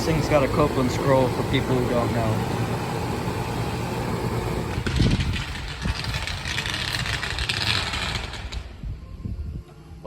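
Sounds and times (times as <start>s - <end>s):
compressor humming: 0.0s - 7.4s
condenser fan rushing: 0.0s - 10.0s.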